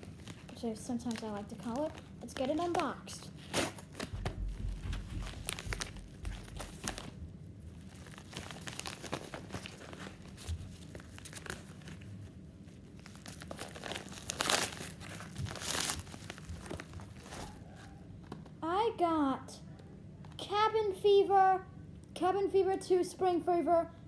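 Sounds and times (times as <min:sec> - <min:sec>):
packaging crinkling and tearing: 0:00.0 - 0:18.0.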